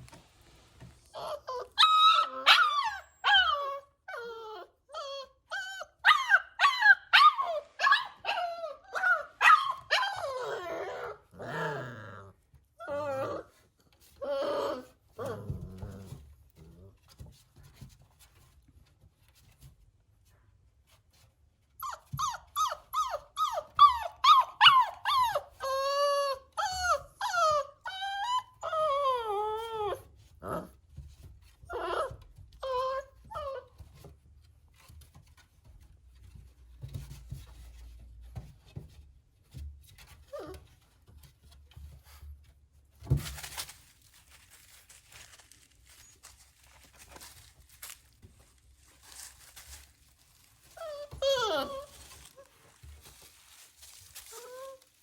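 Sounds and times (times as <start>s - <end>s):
puppy whimpering and yelping: 1.1s - 15.9s, 21.8s - 30.8s, 31.7s - 34.0s, 40.2s - 40.7s, 50.6s - 52.6s, 54.2s - 55.0s.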